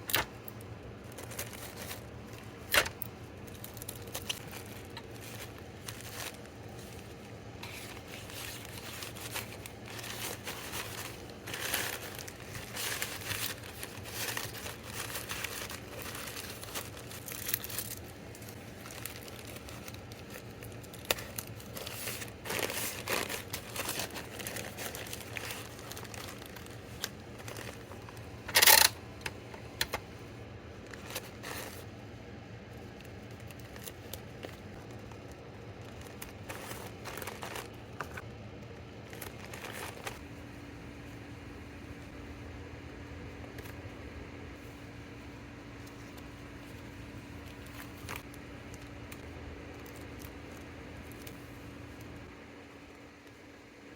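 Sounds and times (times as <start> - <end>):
packing materials crinkling: 0.0 - 31.9, 32.8 - 41.2
packing material ripping: 0.1 - 29.0, 33.4 - 38.2, 39.1 - 40.2.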